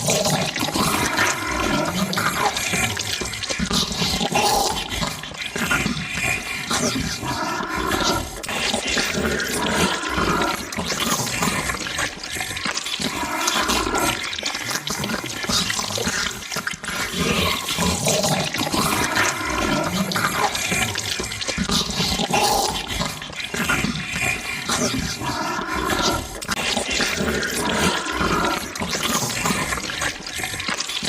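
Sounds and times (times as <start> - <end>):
low growling grunts: 0.0 - 31.0
wet gurgling chewing: 0.0 - 31.0.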